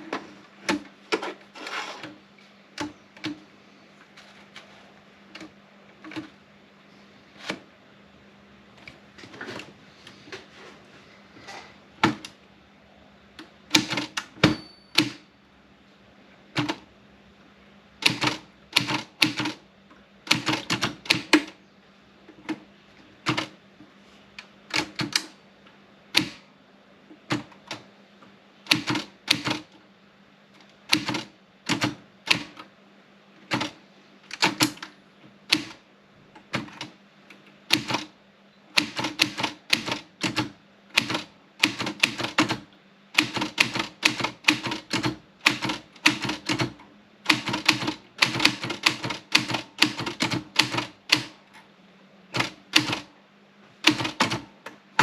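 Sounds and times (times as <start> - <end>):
manual typewriter typing: 13.7 - 15.2, 16.6 - 16.8, 18.0 - 19.6, 20.2 - 21.6, 23.2 - 23.5, 24.7 - 25.3, 28.7 - 29.7, 30.9 - 32.6, 33.5 - 34.9, 35.5 - 35.8, 36.5 - 37.0, 37.7 - 38.1, 38.7 - 51.4, 52.3 - 53.1, 53.8 - 55.0.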